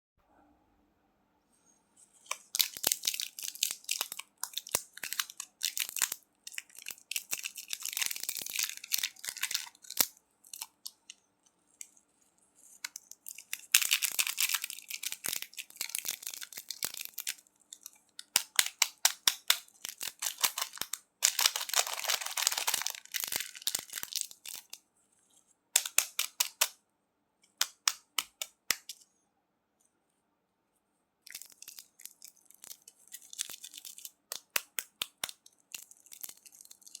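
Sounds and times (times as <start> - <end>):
candy crunching: 2.3 - 11.2, 12.6 - 24.8, 31.3 - 37.0.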